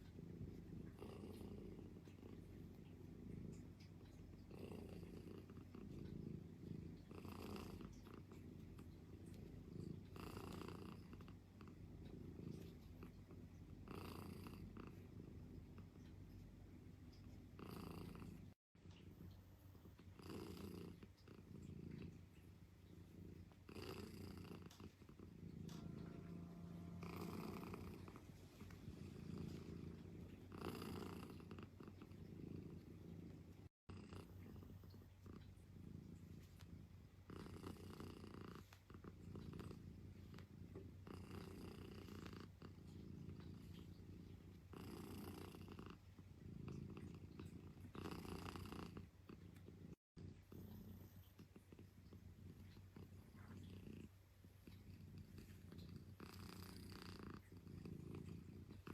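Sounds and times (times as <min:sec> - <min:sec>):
cat purring: 0:00.0 - 0:58.9.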